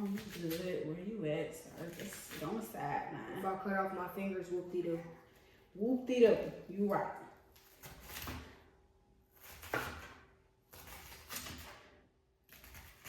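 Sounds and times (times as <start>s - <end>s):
knife cutting on cutting board: 7.5s - 8.7s, 9.3s - 11.9s, 12.5s - 13.0s.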